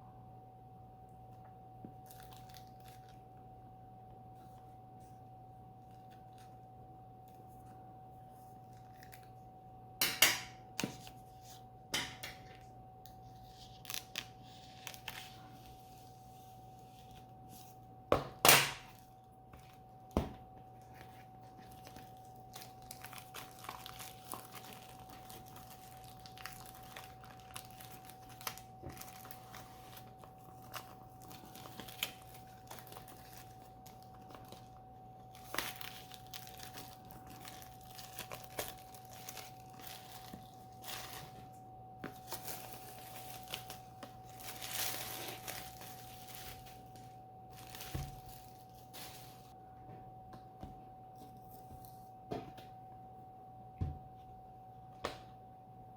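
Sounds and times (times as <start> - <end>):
faint electrical hum: 0.0 - 55.9
packaging crinkling: 2.0 - 3.2, 13.4 - 16.1, 20.8 - 41.4, 42.0 - 49.6.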